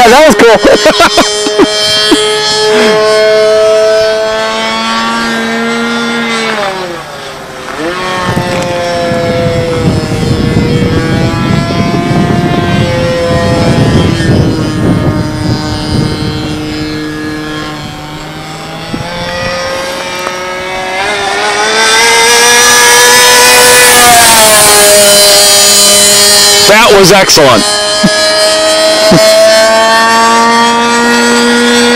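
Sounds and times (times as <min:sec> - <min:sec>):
model plane engine whining: 0:00.0 - 0:31.9
wind noise on microphone: 0:00.0 - 0:31.9.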